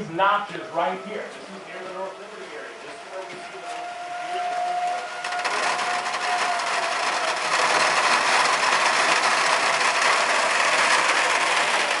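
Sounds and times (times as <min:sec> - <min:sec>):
heavy rain: 0:03.8 - 0:12.0.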